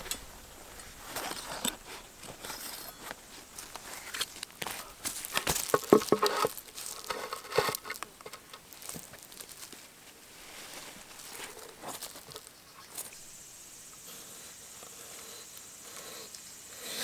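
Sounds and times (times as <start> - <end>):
crinkling and rustling: 0.0 - 13.3.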